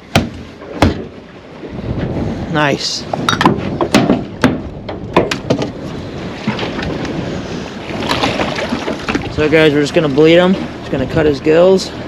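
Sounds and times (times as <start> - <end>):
knocks and thumps in boat: 0.0 - 2.3, 3.1 - 11.3
boat engine: 0.0 - 12.0
wind noise: 1.5 - 10.0.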